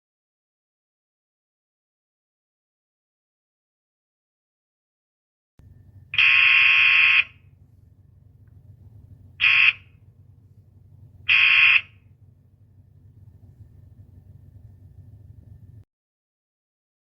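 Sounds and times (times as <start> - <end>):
doorbell buzzing: 6.0 - 7.4, 9.4 - 9.9, 11.3 - 12.0.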